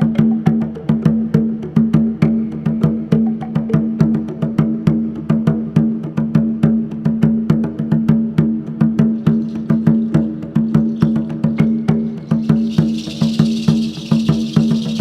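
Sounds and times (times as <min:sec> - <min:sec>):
wood block strikes: 0:09.0 - 0:15.0.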